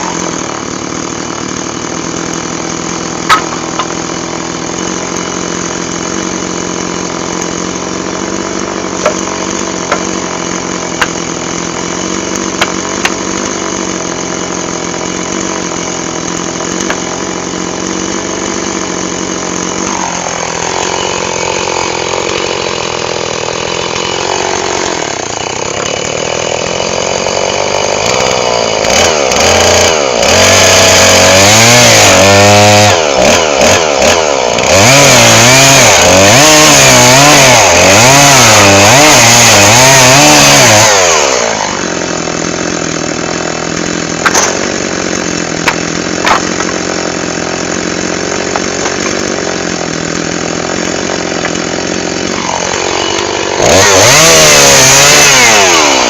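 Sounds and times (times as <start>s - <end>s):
chainsaw engine idling and revving: 0.0s - 56.0s.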